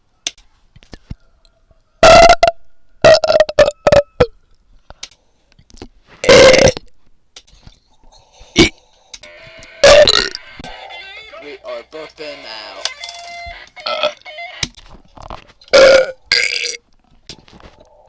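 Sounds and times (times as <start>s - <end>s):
person burping: 2.0s - 4.1s, 6.2s - 6.9s, 8.5s - 8.8s, 9.8s - 10.4s, 15.7s - 16.8s.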